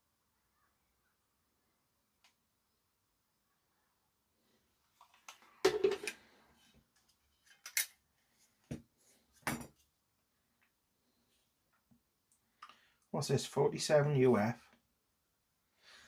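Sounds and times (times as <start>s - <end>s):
parts knocking on workbench: 5.6s - 6.2s, 9.4s - 9.7s.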